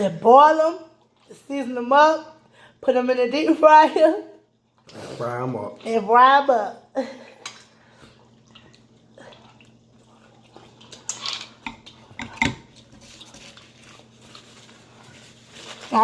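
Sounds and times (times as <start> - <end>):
faint steady hum: 0.0 - 16.0
cutlery and plates clinking: 11.1 - 12.7.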